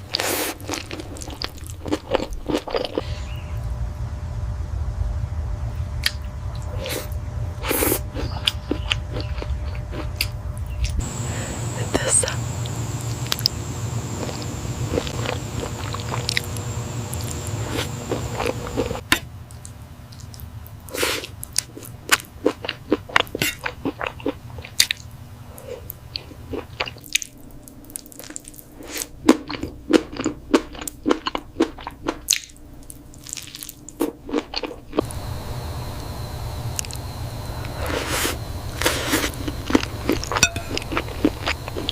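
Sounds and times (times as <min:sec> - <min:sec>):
person chewing: 0:00.0 - 0:03.0, 0:06.0 - 0:11.3, 0:12.6 - 0:35.1, 0:37.6 - 0:41.9.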